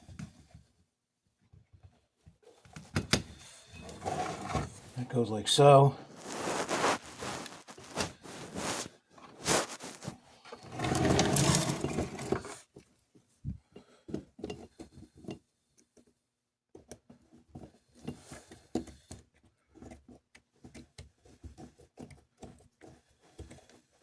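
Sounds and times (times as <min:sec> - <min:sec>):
rough scraping rustle: 0:03.5 - 0:12.6.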